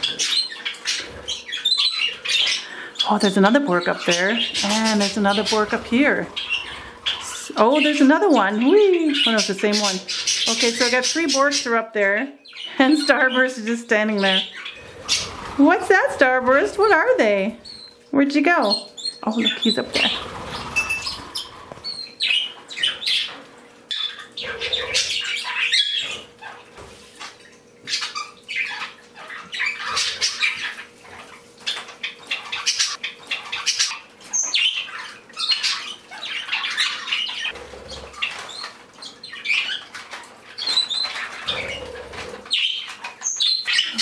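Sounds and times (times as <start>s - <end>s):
cage birds chirping and squawking: 0.0s - 44.0s
wings flapping: 14.7s - 16.8s, 19.8s - 22.0s.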